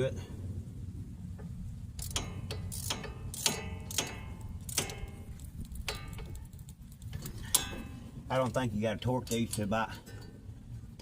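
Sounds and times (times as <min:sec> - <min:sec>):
ratchet wrench clicking: 0:02.0 - 0:07.8.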